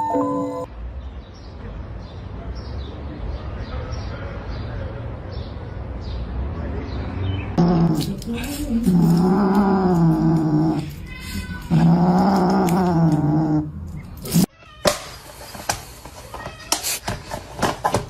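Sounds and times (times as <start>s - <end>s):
cat yowling: 8.8s - 13.7s.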